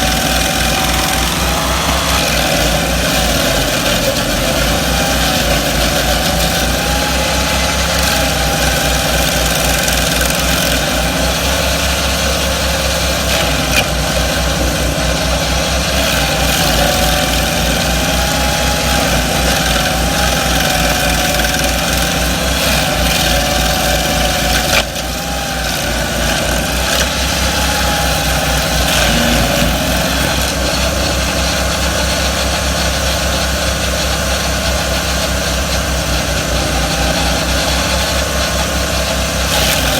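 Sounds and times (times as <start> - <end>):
wavering whine: 0.0 - 32.7
stump grinder engines running: 0.0 - 39.9.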